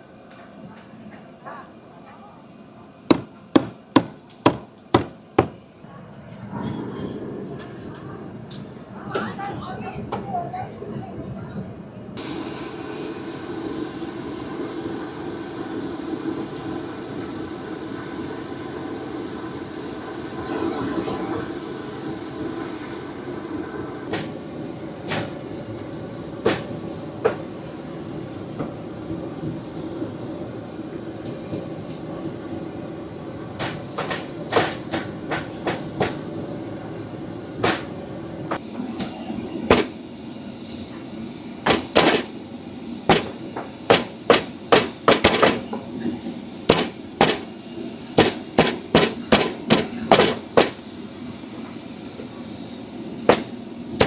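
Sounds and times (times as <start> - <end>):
sharp clicks and knocks: 41.7 - 42.3, 43.1 - 45.7, 46.7 - 47.5, 48.2 - 50.8.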